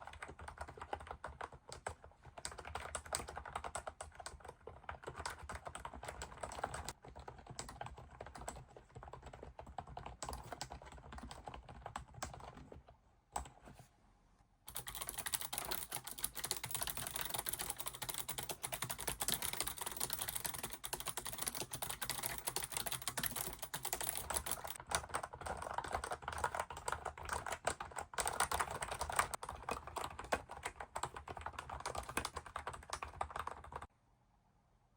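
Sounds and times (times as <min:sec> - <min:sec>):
fast keyboard typing: 0:00.0 - 0:13.6, 0:14.7 - 0:33.9.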